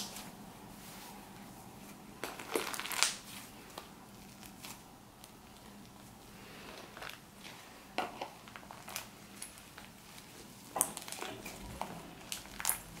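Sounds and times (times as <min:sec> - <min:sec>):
slime squished by hand: 0:02.2 - 0:05.9.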